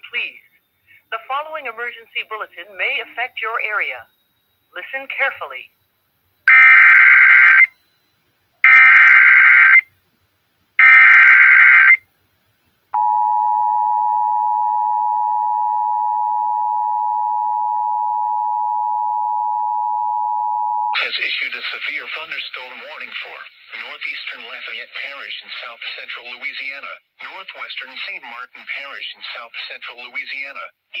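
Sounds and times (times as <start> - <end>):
data burst tones: 8.6 - 9.8, 10.8 - 12.0.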